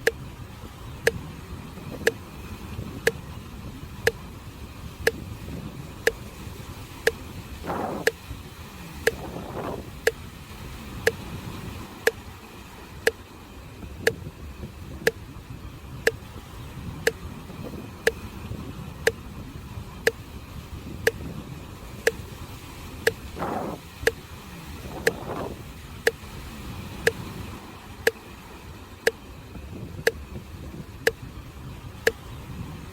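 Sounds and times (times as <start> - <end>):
sea waves on shore: 0.0 - 32.9
sharp ticking: 7.0 - 8.2.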